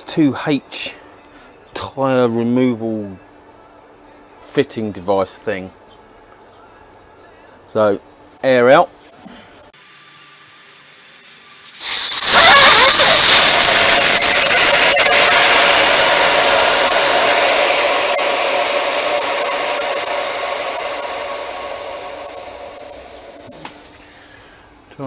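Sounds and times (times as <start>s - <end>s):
air hissing out of tyre valve: 9.8s - 24.7s.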